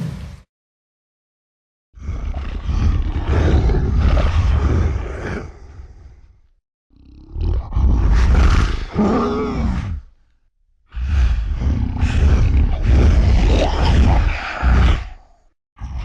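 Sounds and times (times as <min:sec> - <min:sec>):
dinosaur roar: 0:02.0 - 0:06.2, 0:06.9 - 0:10.2, 0:10.9 - 0:16.0.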